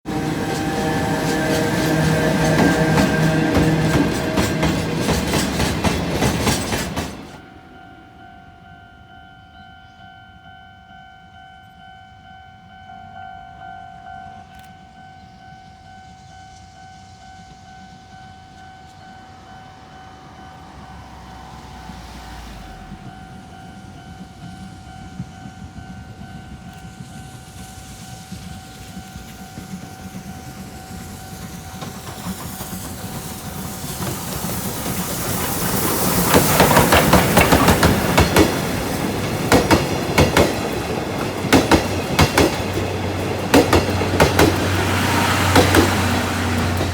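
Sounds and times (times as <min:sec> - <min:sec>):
steam train rumbling past: 0:00.0 - 0:46.9
wheels clattering over rail joints: 0:00.1 - 0:07.4, 0:20.6 - 0:46.9
steady high ringing tone: 0:07.4 - 0:32.2.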